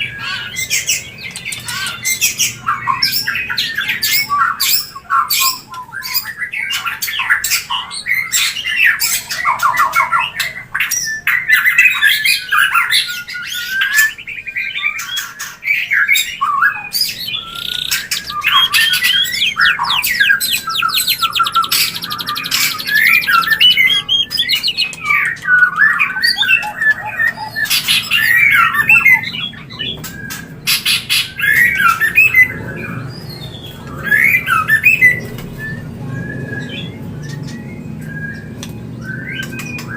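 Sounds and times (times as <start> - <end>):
bird singing whistles and trills: 0.0 - 39.9
sharp bird clicks: 17.3 - 28.5.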